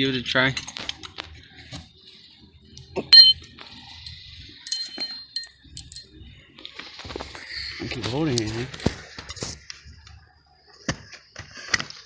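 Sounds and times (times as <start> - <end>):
metal tools clinking: 3.1 - 3.5, 4.7 - 6.0.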